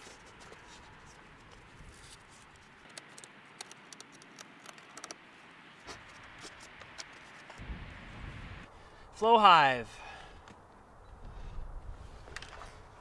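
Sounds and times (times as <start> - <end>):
steady low hiss: 5.2 - 12.0.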